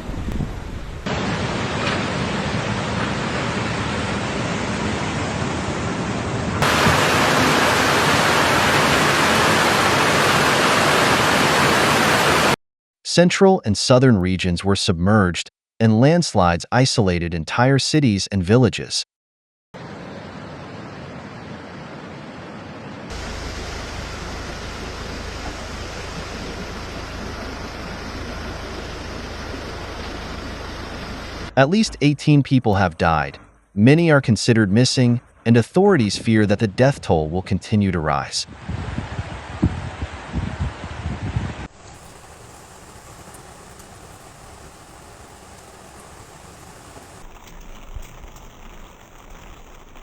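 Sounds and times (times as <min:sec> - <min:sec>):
floodwater rushing: 0:06.6 - 0:12.6, 0:23.1 - 0:31.5, 0:41.7 - 0:50.0.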